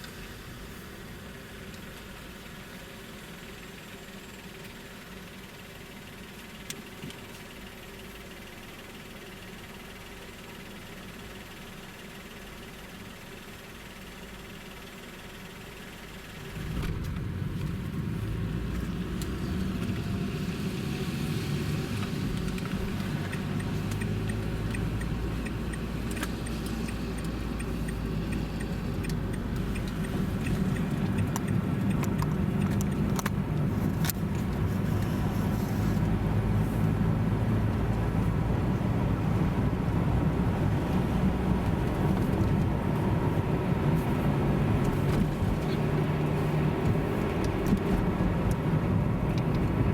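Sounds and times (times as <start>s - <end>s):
car engine and tyre hum: 0.0s - 49.9s
small rattles and clicks: 21.9s - 35.8s.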